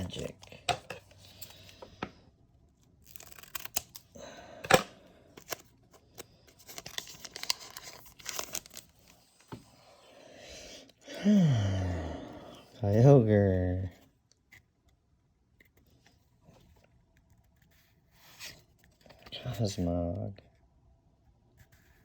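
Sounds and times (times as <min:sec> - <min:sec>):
foil wrapper tearing and crinkling: 0:03.0 - 0:04.1, 0:05.4 - 0:09.3.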